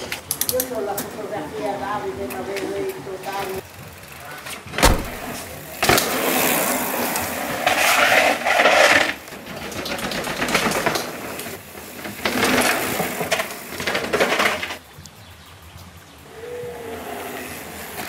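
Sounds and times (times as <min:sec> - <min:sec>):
bike hub fast ticking: 0:02.2 - 0:04.4
bike tyres skidding over dirt: 0:03.3 - 0:14.8, 0:16.2 - 0:18.0.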